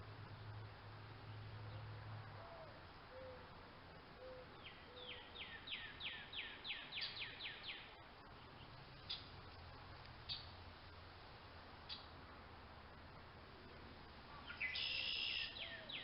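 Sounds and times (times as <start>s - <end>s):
low hooting bird call: 1.6s - 3.6s, 4.2s - 7.8s, 14.3s - 16.0s
songbird whistling: 4.2s - 7.8s, 14.4s - 16.0s
short bird chirps: 14.4s - 16.0s.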